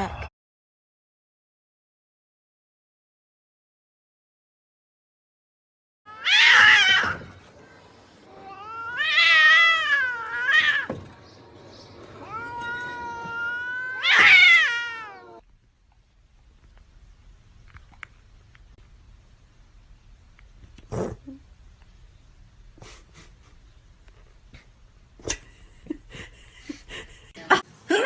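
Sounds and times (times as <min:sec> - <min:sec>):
cat yowling: 0:06.1 - 0:07.3, 0:08.3 - 0:10.9, 0:12.2 - 0:15.4.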